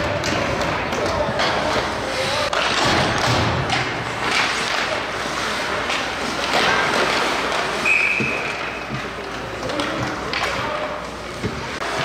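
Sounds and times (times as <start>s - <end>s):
crowd noise: 0.0s - 12.0s
hockey sticks knocking: 0.0s - 12.0s
skates on ice: 0.0s - 12.0s
referee whistle blast: 7.8s - 8.3s.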